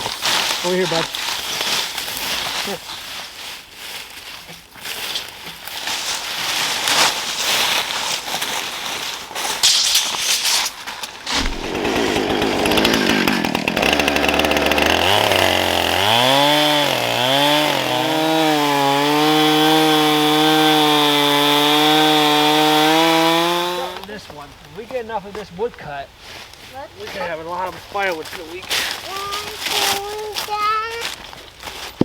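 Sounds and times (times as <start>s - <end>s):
chainsaw engine revving: 11.2s - 24.1s.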